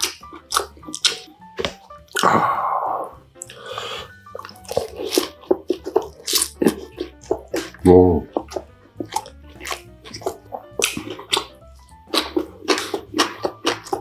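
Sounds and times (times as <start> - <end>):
person chewing: 0.0 - 14.0
breathy rush: 2.2 - 4.3.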